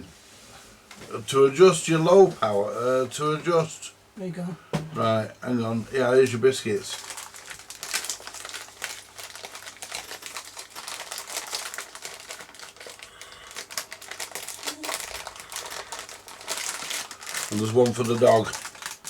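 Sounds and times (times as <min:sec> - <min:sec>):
wrapper crinkling: 0:06.8 - 0:19.0.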